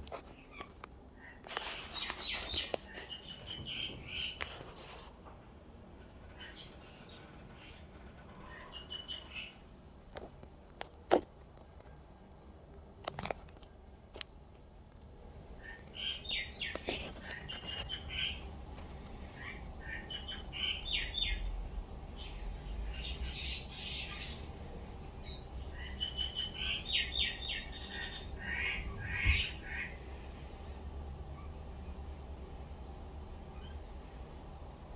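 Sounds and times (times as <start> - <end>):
small bird chirping and squawking: 15.6 - 18.5, 19.2 - 24.6, 25.2 - 30.0.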